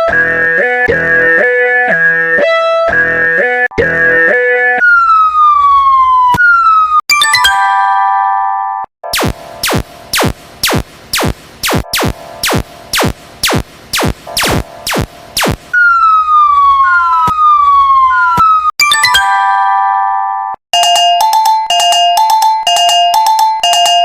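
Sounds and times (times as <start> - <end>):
held electronic chord: 0.0 - 4.9
falling siren-like tone: 0.0 - 7.0, 14.0 - 18.7.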